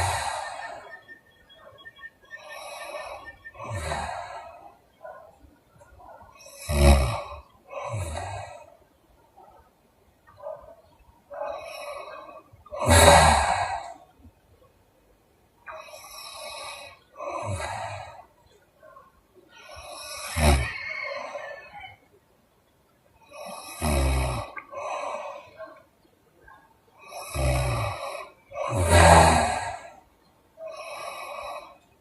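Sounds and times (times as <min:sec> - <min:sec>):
breathy exhales: 0:00.0 - 0:01.0
woman snoring: 0:00.0 - 0:01.0, 0:02.4 - 0:04.6, 0:06.4 - 0:08.7, 0:12.8 - 0:14.0, 0:15.8 - 0:18.1, 0:19.7 - 0:21.2, 0:23.3 - 0:25.0, 0:27.1 - 0:30.0, 0:30.7 - 0:31.8.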